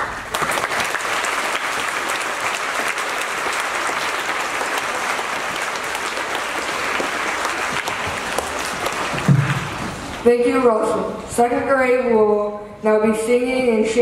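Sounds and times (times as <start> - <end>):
audience applauding: 0.0 - 10.2.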